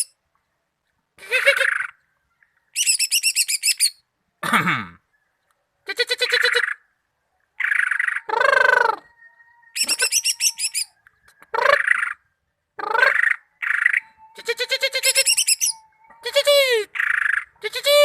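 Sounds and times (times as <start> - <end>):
bird singing: 1.8 - 4.0, 6.3 - 18.0.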